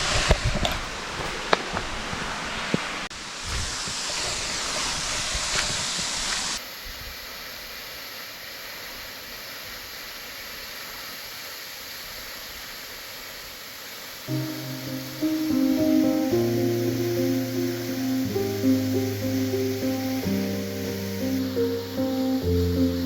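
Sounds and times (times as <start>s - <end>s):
quiet steady hiss: 5.6s - 23.0s
waterfall rushing: 14.2s - 23.0s.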